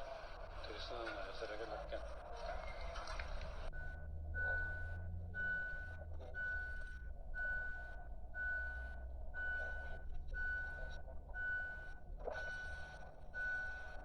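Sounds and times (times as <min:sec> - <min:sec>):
electronic alarm beeping: 0:03.7 - 0:14.0.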